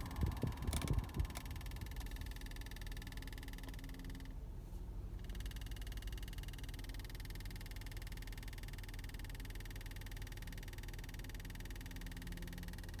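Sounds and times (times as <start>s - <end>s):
fast pulsing buzz from car: 0.0s - 4.3s.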